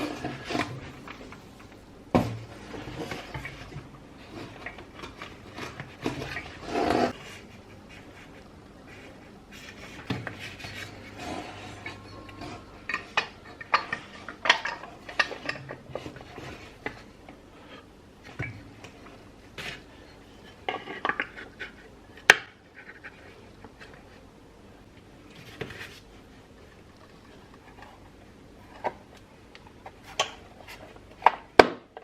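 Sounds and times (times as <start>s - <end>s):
metal parts and tools clattering: 10.4s - 17.0s.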